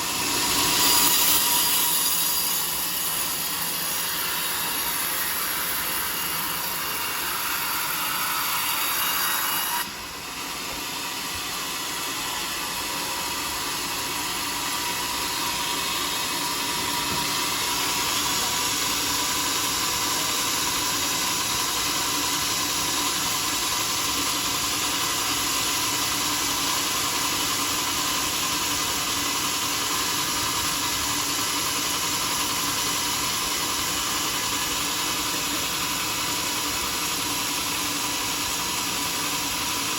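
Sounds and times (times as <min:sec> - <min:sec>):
saw cutting through log: 0:00.0 - 0:39.9.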